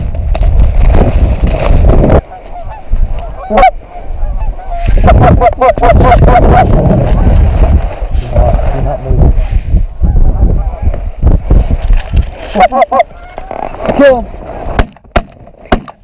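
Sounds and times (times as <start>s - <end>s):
geese honking: 2.2s - 6.8s, 12.5s - 13.9s.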